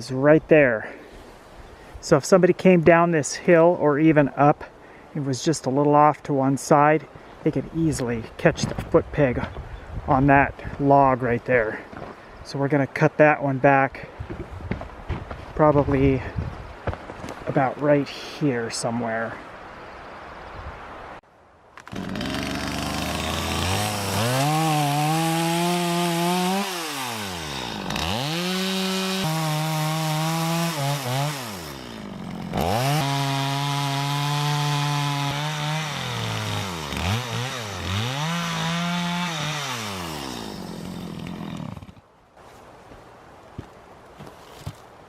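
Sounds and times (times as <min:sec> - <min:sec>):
chainsaw cutting log: 0:21.8 - 0:42.0.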